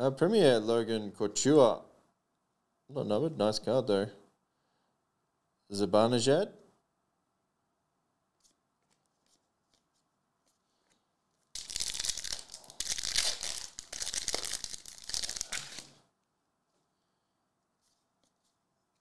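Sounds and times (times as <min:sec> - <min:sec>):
wrapper tearing and crinkling: 0:11.5 - 0:16.0.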